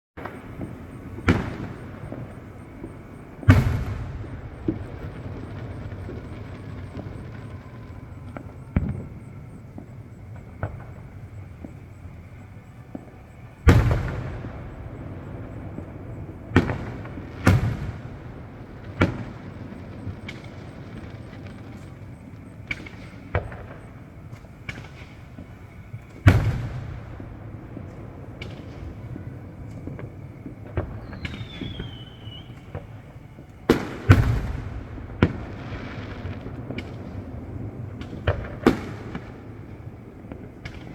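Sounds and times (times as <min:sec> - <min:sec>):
fireworks booming bangs: 0:00.2 - 0:40.9
fireworks pops: 0:00.2 - 0:40.9.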